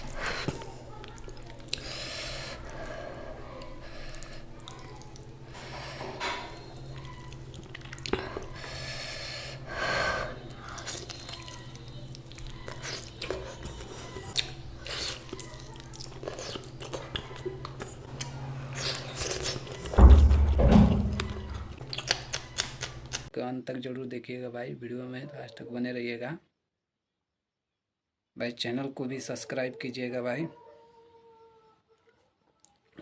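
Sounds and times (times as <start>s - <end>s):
person chewing food: 0.0s - 9.2s, 10.4s - 20.0s, 21.0s - 23.3s.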